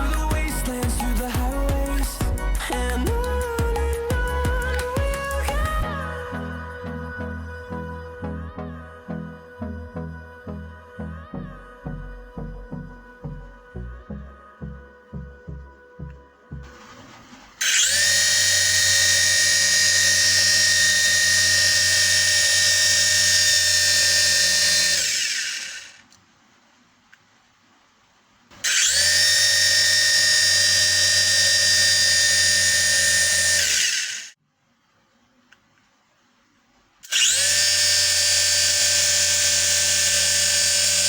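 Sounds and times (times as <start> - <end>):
small electric motors whining: 17.6 - 26.0, 28.6 - 34.4, 37.0 - 41.0.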